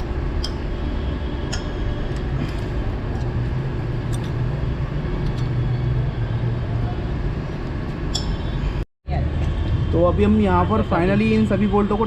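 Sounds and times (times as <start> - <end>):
workshop hum: 0.0 - 12.0.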